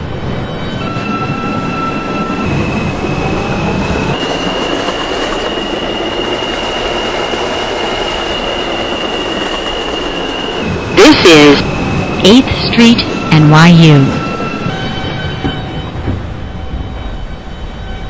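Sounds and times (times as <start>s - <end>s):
train wheels rumbling on track: 0.0s - 18.0s
high squeal: 5.3s - 11.0s.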